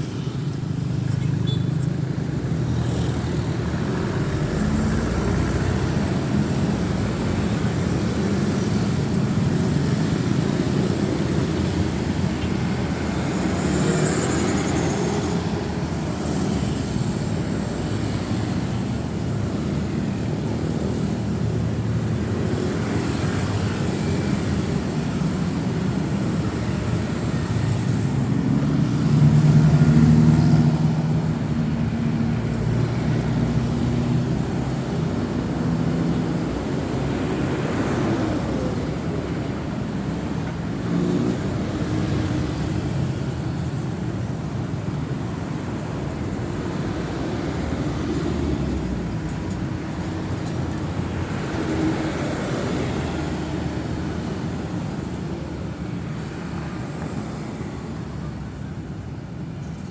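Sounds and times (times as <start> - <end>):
busy road traffic: 0.0 - 59.9.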